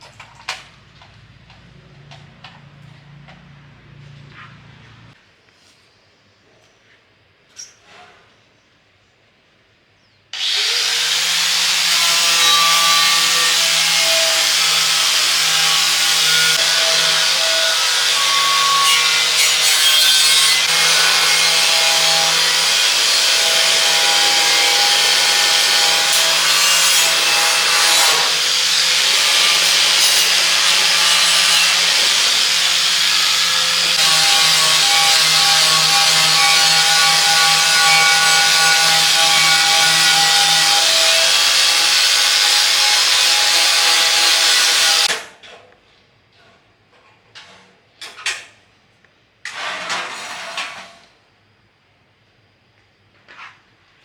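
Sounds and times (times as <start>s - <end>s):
power tool grinding: 10.4s - 45.1s.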